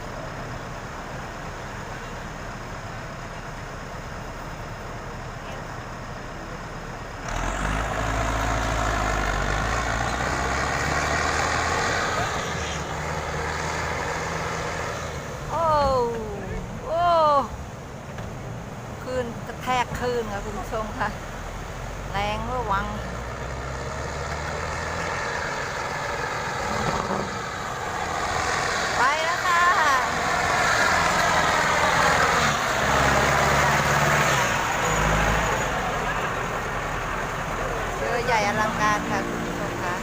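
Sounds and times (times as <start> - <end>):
low engine hum: 0.0 - 40.0
boat engine running: 24.8 - 33.9.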